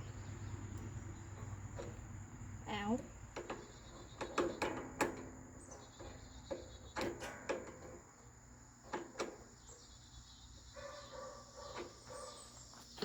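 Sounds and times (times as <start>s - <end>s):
crickets trilling: 0.0s - 13.0s
sharp clicks and knocks: 3.3s - 8.0s, 8.8s - 9.5s.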